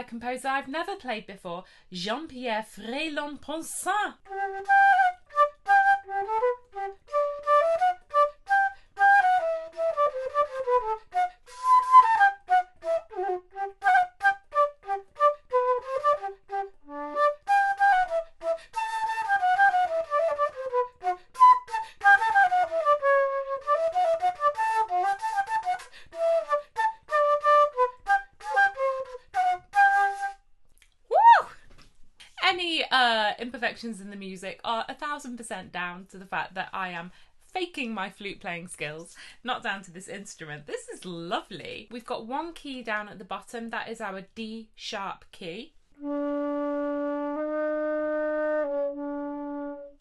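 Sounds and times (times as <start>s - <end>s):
flute solo melody: 4.2s - 30.5s, 46.0s - 50.0s.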